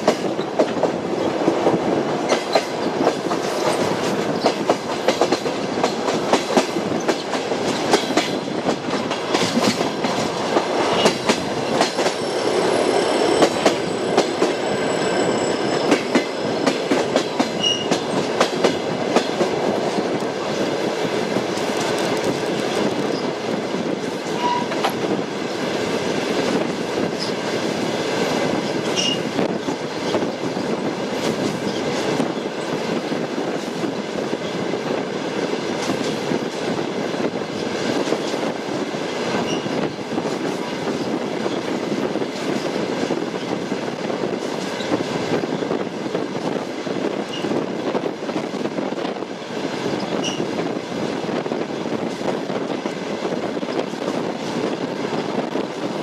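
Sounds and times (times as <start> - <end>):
train wheels clicking over joints: 0.0 - 33.9
high-pitched wheel squeal: 17.6 - 18.0.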